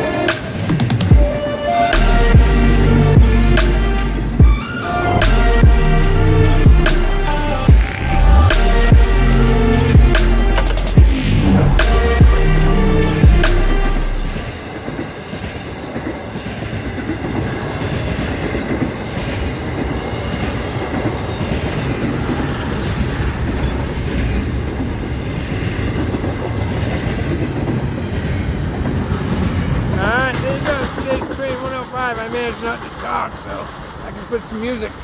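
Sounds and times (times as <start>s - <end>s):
music: 0.0s - 14.6s
freight train rumbling: 0.0s - 35.0s
train wheels clickety-clack: 11.8s - 35.0s.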